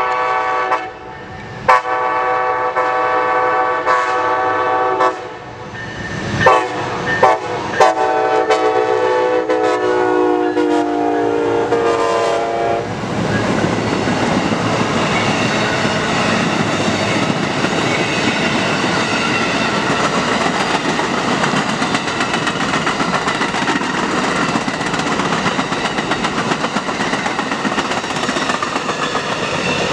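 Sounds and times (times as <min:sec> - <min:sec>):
locomotive horn blasts: 0:00.0 - 0:01.1, 0:01.7 - 0:05.4, 0:06.4 - 0:12.9
train rolling past: 0:00.0 - 0:29.9.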